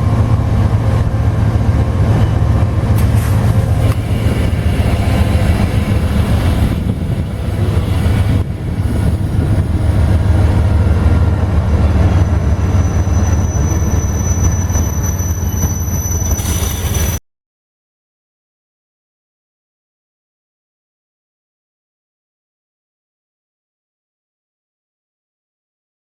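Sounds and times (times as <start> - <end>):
freight train rumbling past: 0.0 - 17.2
high wheel squeal: 11.8 - 17.2.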